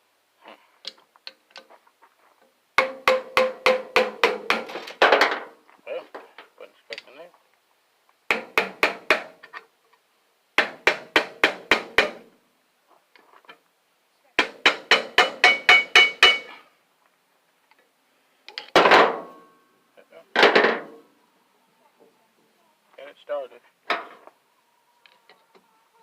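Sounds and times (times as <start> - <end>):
hammer striking metal housing: 14.4 - 16.6.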